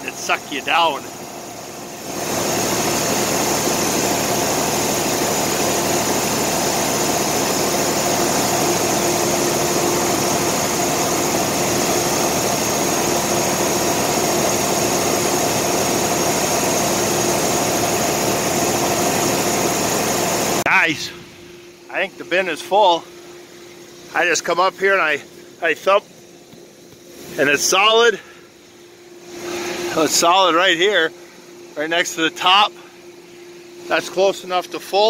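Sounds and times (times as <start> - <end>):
grain flowing: 0.0 - 21.2
grain dryer roaring: 0.0 - 35.0.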